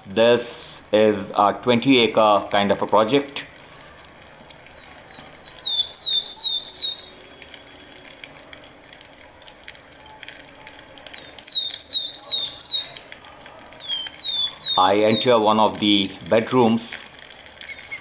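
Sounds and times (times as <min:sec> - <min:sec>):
bird whistling descending notes: 0:04.5 - 0:07.8, 0:11.2 - 0:13.0, 0:13.8 - 0:15.3, 0:17.6 - 0:18.0.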